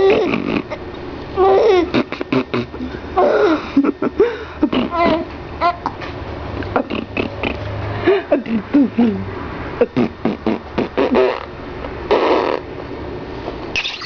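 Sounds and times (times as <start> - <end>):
sputtering raspberry noise: 0.0 - 0.8, 1.6 - 2.9, 6.8 - 7.7, 9.8 - 12.7
squeaky vocal swoops: 0.0 - 0.8, 13.8 - 14.0.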